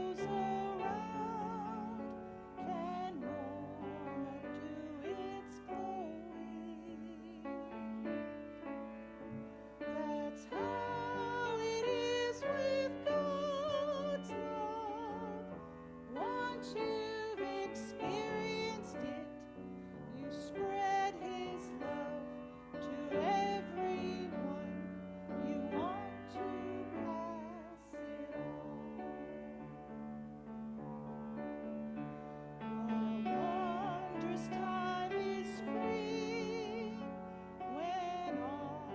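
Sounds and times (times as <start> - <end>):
woman singing a hymn: 0.0 - 8.4, 9.8 - 29.7, 32.6 - 38.9
piano: 0.0 - 38.9.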